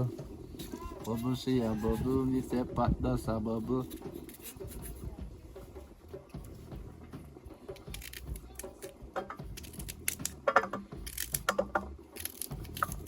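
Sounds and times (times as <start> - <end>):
metal cooking gear clinking: 7.8 - 13.0.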